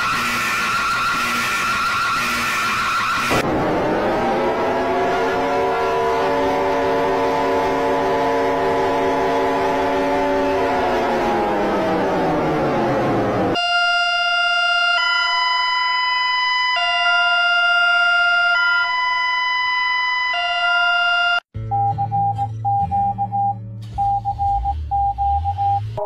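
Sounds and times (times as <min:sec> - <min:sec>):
siren sliding down in pitch: 0:00.0 - 0:21.4
pulsing beep over synth bass: 0:20.2 - 0:26.0.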